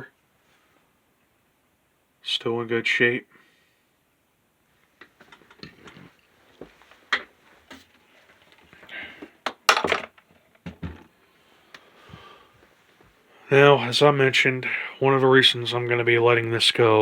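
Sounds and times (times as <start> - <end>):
objects being moved by hand: 5.0 - 11.2.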